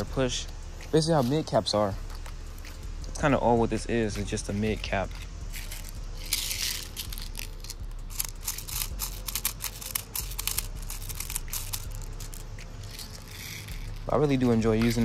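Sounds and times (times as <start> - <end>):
plastic clicks and rattles: 5.1 - 14.0.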